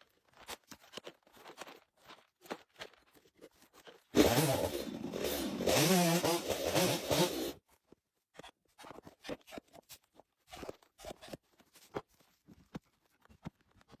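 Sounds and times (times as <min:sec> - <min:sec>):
chainsaw engine running: 0:04.2 - 0:07.6.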